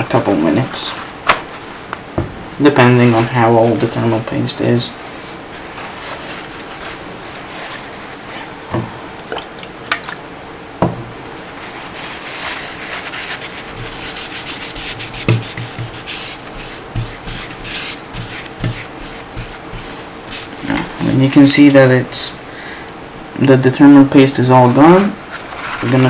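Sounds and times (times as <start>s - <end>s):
paper towel scrubbing metal: 5.1s - 8.5s, 11.4s - 21.2s.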